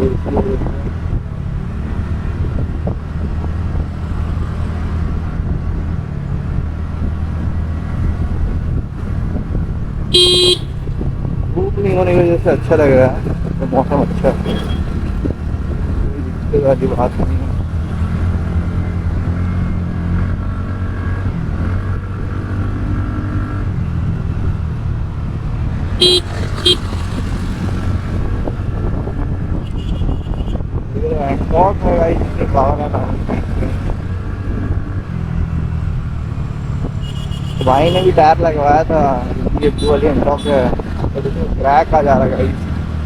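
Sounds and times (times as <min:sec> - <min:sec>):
road noise: 0:00.0 - 0:43.0
scooter engine running: 0:10.1 - 0:11.0, 0:26.0 - 0:28.0
scooter engine droning: 0:10.1 - 0:20.5, 0:25.7 - 0:28.9.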